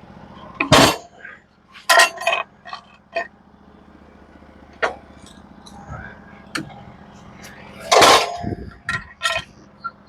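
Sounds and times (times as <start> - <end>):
metallic clinks and clanks: 7.8 - 9.6.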